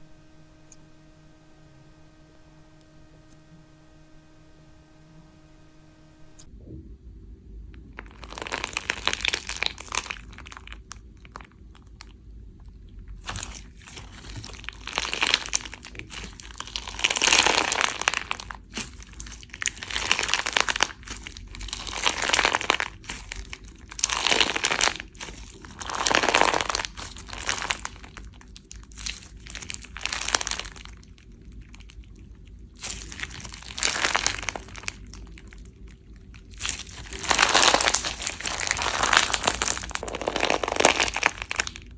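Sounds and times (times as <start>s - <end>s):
slime crackling pops: 13.2s - 30.9s, 32.7s - 35.5s, 36.3s - 41.9s.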